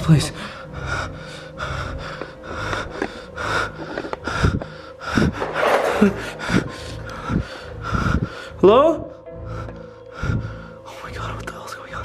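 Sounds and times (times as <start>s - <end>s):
man panting: 0.4s - 8.6s.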